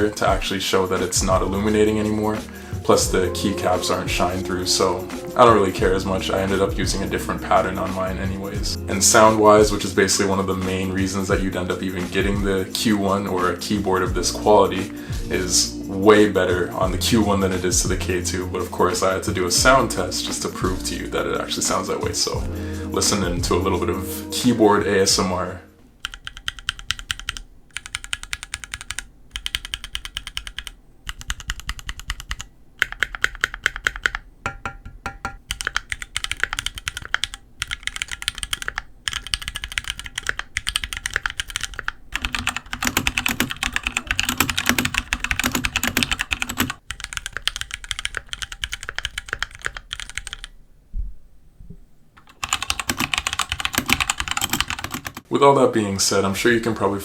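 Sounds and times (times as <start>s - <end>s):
mechanical keyboard typing: 25.9s - 50.5s, 52.2s - 55.3s.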